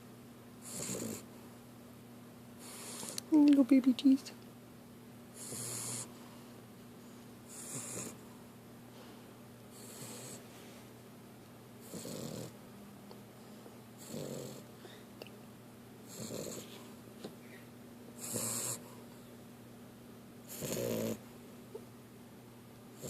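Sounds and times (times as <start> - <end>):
puppy snoring: 0.6 - 1.3, 2.6 - 3.3, 5.3 - 6.2, 7.5 - 8.2, 9.7 - 10.5, 11.8 - 12.6, 14.0 - 14.9, 16.0 - 16.9, 18.2 - 19.0, 20.4 - 21.3.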